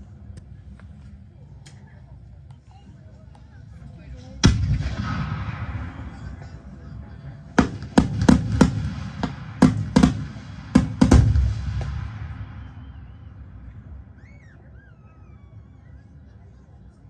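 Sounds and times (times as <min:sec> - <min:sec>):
low rumble: 0:04.2 - 0:17.0
fireworks bangs: 0:04.4 - 0:14.5.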